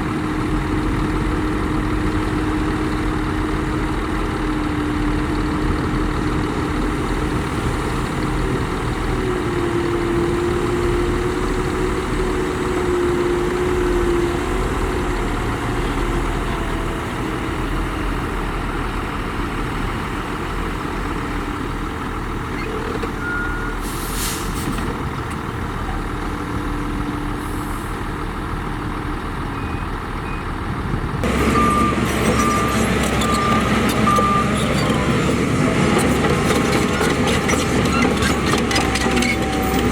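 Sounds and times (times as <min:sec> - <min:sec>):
diesel machinery engine hum: 0:00.0 - 0:39.9
truck reversing alarm beeps: 0:21.3 - 0:24.5, 0:29.4 - 0:30.6, 0:31.2 - 0:39.9
air-brake hiss: 0:23.8 - 0:24.9.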